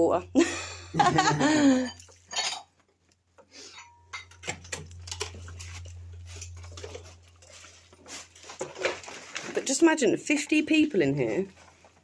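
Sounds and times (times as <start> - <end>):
steady low hum: 0.0 - 2.1, 3.3 - 9.6
light metallic clinks and scrapes: 1.8 - 9.8.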